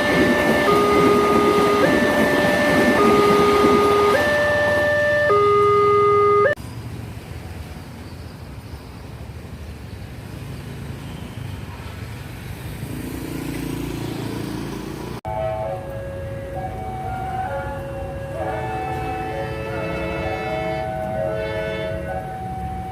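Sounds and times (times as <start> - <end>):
two-tone level crossing alarm: 0.0 - 6.6, 15.3 - 22.9.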